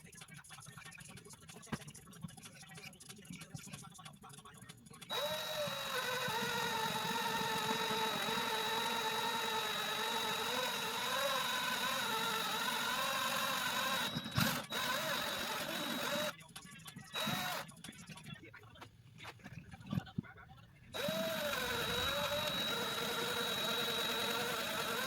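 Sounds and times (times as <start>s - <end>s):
small motor whining: 5.1s - 16.3s, 17.1s - 17.7s, 21.0s - 25.0s.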